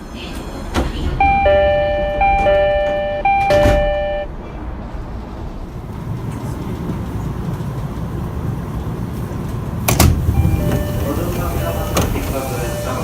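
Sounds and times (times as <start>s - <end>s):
two-tone train door chime: 1.2s - 4.3s, 10.3s - 13.0s.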